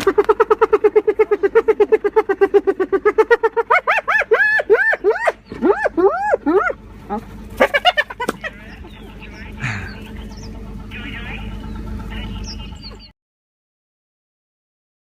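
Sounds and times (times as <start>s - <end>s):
hyenas yelping and crying: 0.0s - 10.9s.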